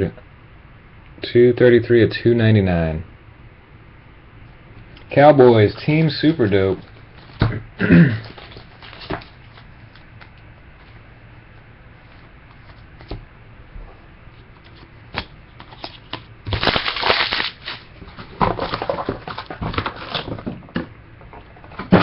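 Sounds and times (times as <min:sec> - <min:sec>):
foil wrapper crinkling: 0:08.2 - 0:10.1, 0:15.6 - 0:20.5.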